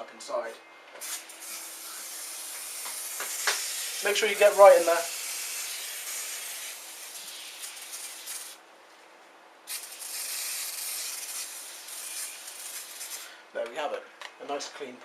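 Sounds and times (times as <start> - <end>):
spray hissing: 1.0 - 8.6, 9.7 - 13.3.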